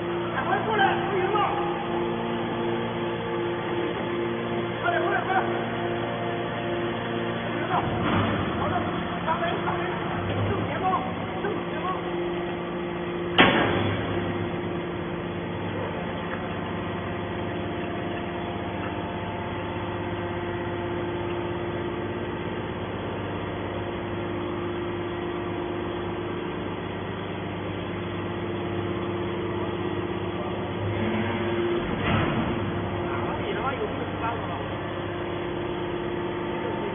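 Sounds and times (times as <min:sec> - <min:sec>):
pump motor humming: 0:00.0 - 0:36.9.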